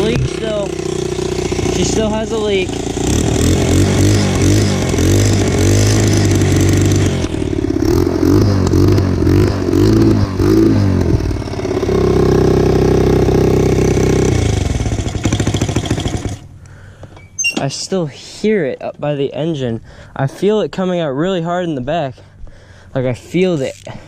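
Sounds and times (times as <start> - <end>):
dirt bike engine revving: 0.0 - 16.5.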